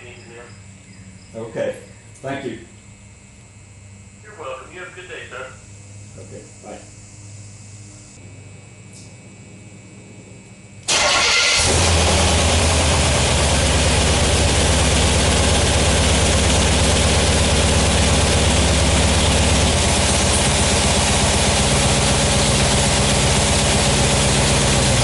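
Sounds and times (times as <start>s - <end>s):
car engine starting and running: 10.8s - 25.0s.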